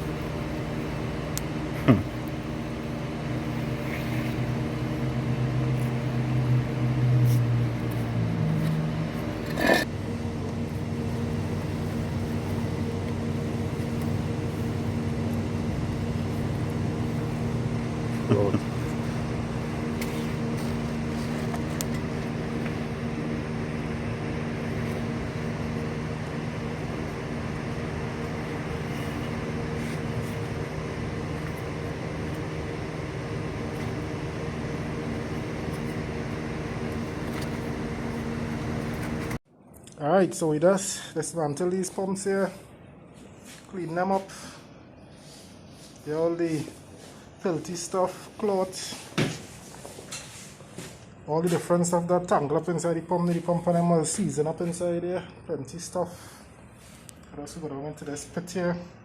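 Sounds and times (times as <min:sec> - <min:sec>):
machine humming: 0:00.0 - 0:39.4.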